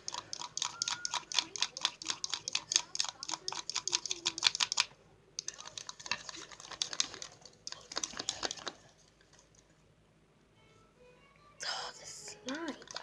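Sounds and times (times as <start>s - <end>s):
clicking and tapping in a container: 0.0s - 9.4s, 12.5s - 13.0s.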